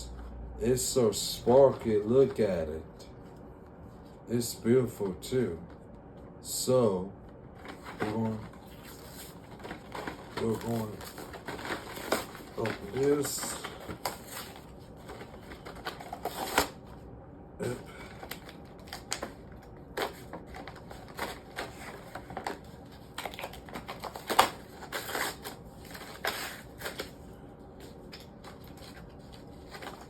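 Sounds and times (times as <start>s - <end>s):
packaging clicks and rustles: 7.6s - 16.8s, 17.6s - 30.0s.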